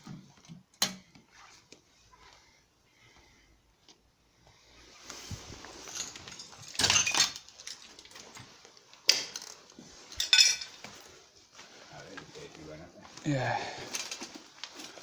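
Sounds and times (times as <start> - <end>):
hard objects clinking and clattering: 5.8 - 11.0, 13.8 - 15.0.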